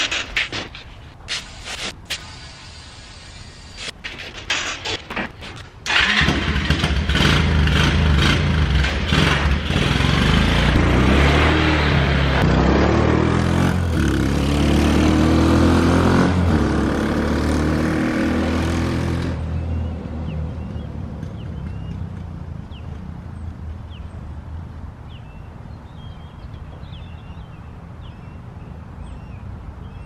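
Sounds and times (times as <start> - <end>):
small engine starting and revving: 5.9 - 19.4.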